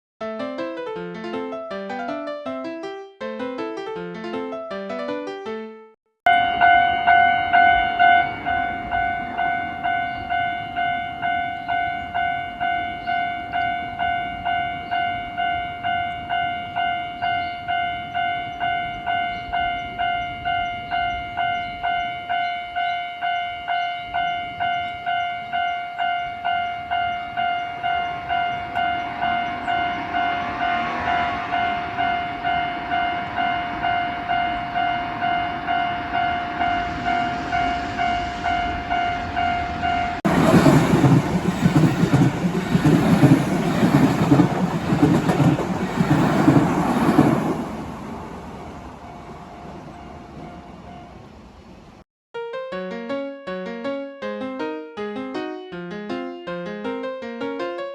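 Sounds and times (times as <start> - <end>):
level-crossing warning bell: 6.3 - 46.9, 49.0 - 51.4
train rumbling past: 6.3 - 52.0.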